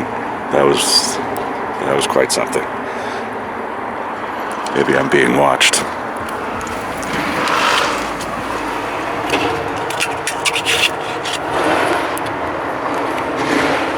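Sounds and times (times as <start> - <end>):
vehicles passing: 0.0 - 13.9
clicks and rubbing on microphone: 6.1 - 12.4.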